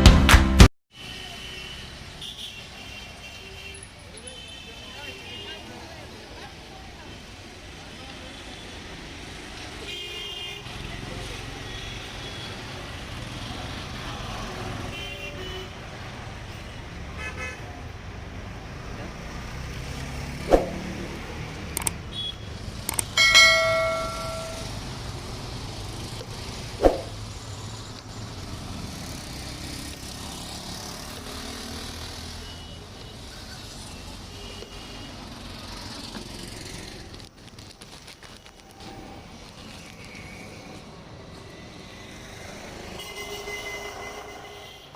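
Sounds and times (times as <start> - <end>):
busy street traffic: 0.0 - 44.9
loud car horn honk: 42.9 - 44.9.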